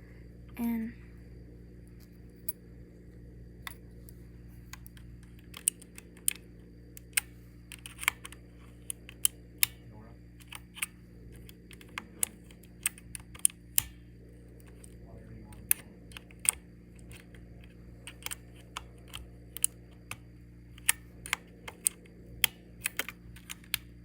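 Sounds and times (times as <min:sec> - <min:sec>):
keyboard switches clicking and snapping: 0:04.7 - 0:09.8, 0:10.4 - 0:14.0, 0:14.6 - 0:24.0.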